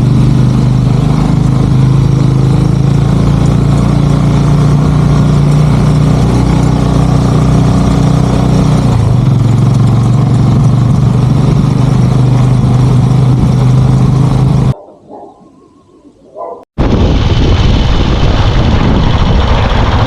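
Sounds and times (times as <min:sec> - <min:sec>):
motorcycle engine running: 0:00.0 - 0:14.8, 0:16.8 - 0:20.0
rush of noise: 0:16.8 - 0:20.0.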